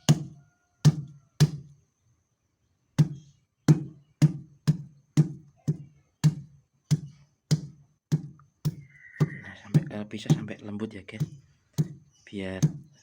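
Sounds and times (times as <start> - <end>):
dull knocks of blunt tool: 0.0 - 1.7, 3.0 - 8.9, 11.2 - 12.0, 12.6 - 13.0.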